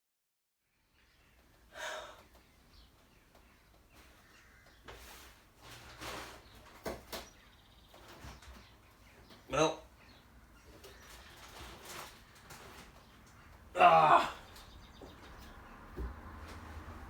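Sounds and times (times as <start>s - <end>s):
man sighing and breathing out: 1.7s - 2.2s.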